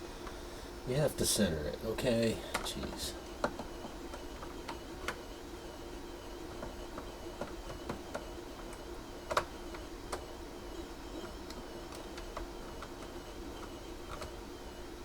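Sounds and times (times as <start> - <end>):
joystick clicks and taps: 2.6 - 5.2, 6.5 - 10.3.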